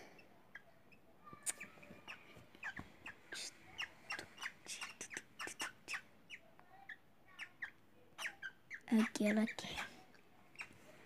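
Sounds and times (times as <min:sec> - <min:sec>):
cockatiel chirping and clicking: 0:01.4 - 0:09.9.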